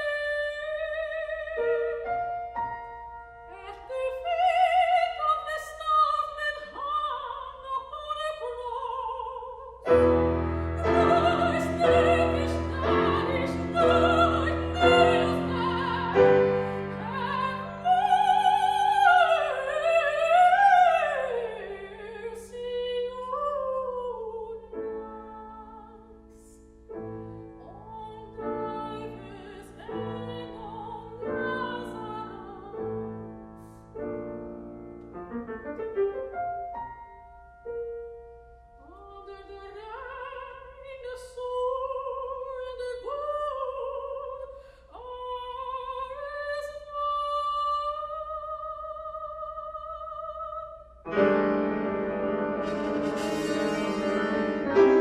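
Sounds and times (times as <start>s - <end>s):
soprano singing with vibrato: 0.0s - 33.8s, 38.8s - 55.0s
piano playing chords: 9.9s - 18.0s, 51.1s - 55.0s.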